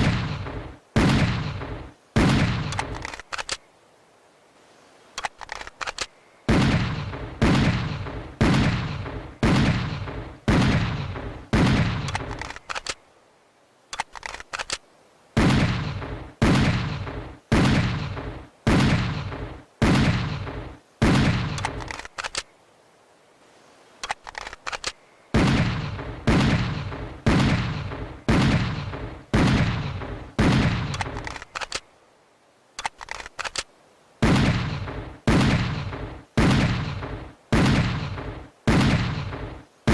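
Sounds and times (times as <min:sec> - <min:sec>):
revolver gunshots: 0:00.0 - 0:03.1, 0:06.5 - 0:12.5, 0:15.4 - 0:22.0, 0:25.3 - 0:31.4, 0:34.2 - 0:39.9
faint clicks: 0:02.6 - 0:03.7, 0:05.1 - 0:06.2, 0:12.0 - 0:13.0, 0:13.9 - 0:14.9, 0:21.5 - 0:22.6, 0:24.0 - 0:25.1, 0:30.9 - 0:31.9, 0:32.8 - 0:33.8.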